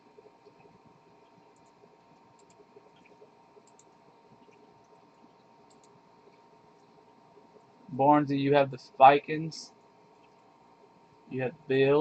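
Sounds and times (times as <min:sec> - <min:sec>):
faint small clicks: 0:00.4 - 0:07.2.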